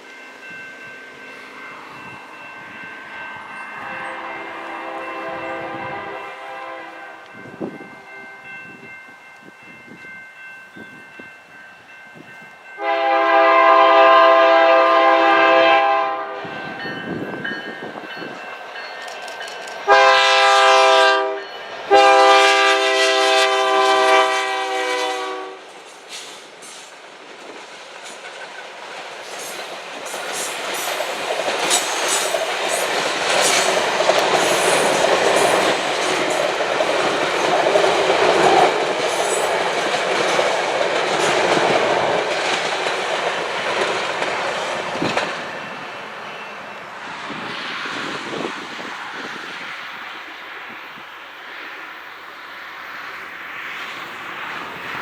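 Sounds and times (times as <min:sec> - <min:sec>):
train rumble: 0:00.0 - 0:55.0
locomotive air horn: 0:03.8 - 0:07.3, 0:12.8 - 0:16.5, 0:19.9 - 0:25.6.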